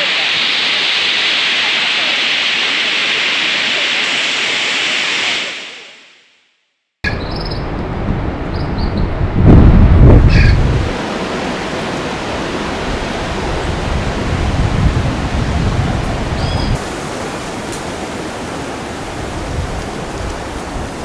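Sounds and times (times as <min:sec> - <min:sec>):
low gusty rumble: 0:07.6 - 0:21.0
waterfall rushing: 0:10.3 - 0:21.0.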